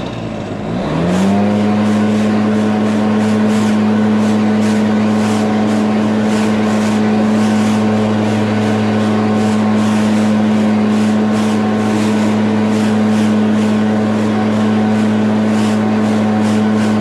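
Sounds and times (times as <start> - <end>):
lawn mower engine running: 0.0 - 17.0.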